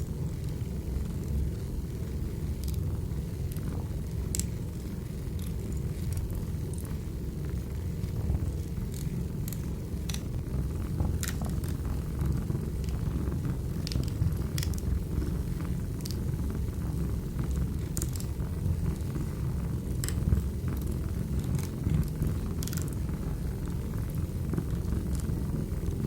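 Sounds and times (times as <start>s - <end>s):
fire rumbling: 0.0s - 26.0s
logs crackling and popping: 2.5s - 26.0s.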